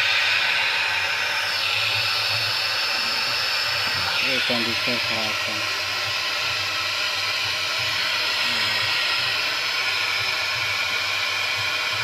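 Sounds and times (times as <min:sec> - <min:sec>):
loud speaker hiss: 0:04.0 - 0:05.8, 0:08.3 - 0:09.0.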